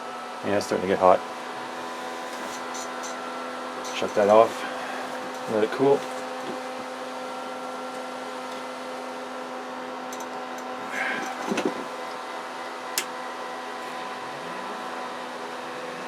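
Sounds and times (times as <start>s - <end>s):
equipment and fans humming: 0.0s - 16.0s
whining tones: 10.8s - 16.0s.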